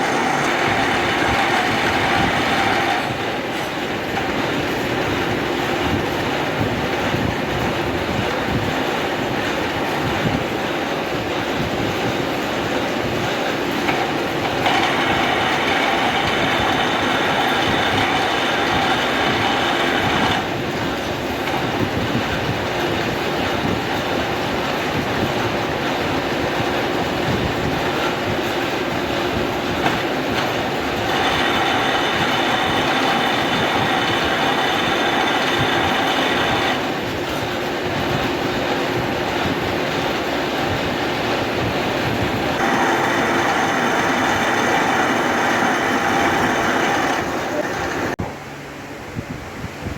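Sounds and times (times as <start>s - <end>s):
metal lathe running: 0.0s - 7.8s, 8.4s - 21.9s, 27.9s - 37.4s, 42.5s - 48.2s.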